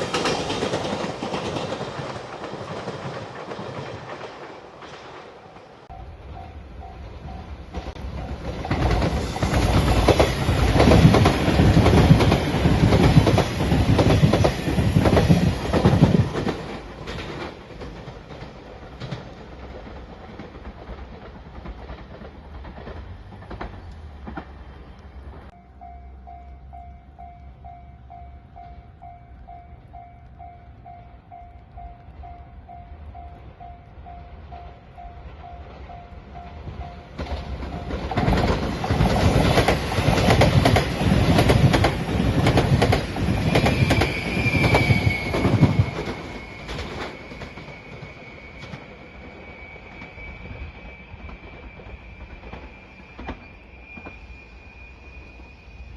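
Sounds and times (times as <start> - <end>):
train wheels clattering: 0.0 - 25.6, 35.2 - 54.2.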